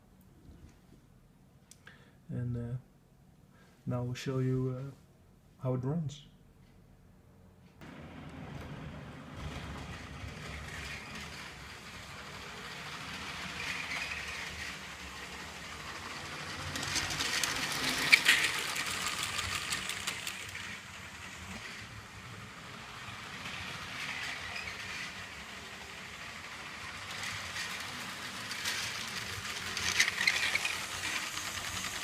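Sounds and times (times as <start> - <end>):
toy train motor whirring: 8.6 - 32.0.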